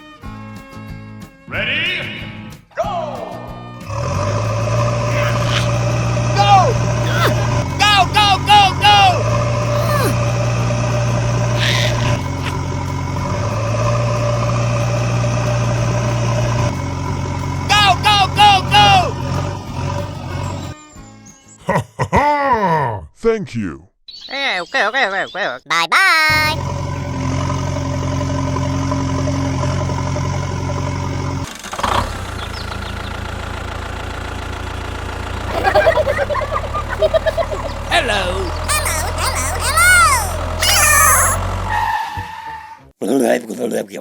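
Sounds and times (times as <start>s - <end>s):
steady engine hum: 3.9s - 20.7s, 26.6s - 41.7s
vehicle engine idling: 3.9s - 20.7s, 26.6s - 38.7s, 40.3s - 40.6s.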